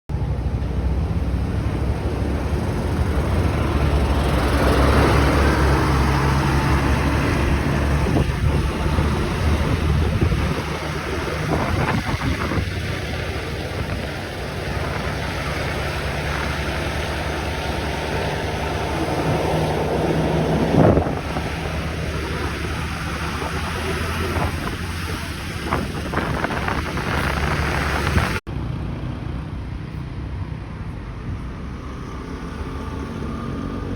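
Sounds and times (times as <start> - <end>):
bus engine running: 0.1 - 33.9
wind on microphone: 1.0 - 28.4.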